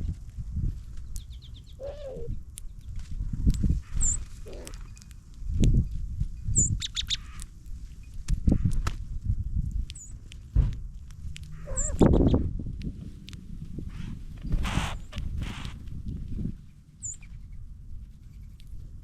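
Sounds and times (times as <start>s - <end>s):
songbird chirping: 1.0s - 5.2s, 6.5s - 7.5s, 9.9s - 10.3s, 11.3s - 12.4s, 16.6s - 18.6s.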